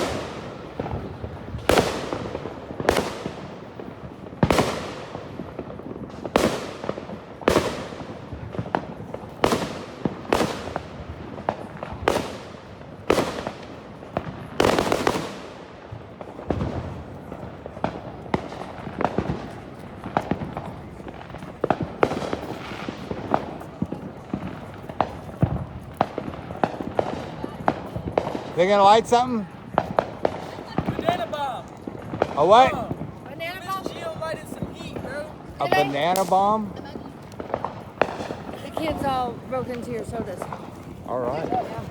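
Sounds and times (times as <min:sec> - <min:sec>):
fireworks bangs: 0:00.0 - 0:41.9
fireworks crackling pops: 0:00.0 - 0:41.9.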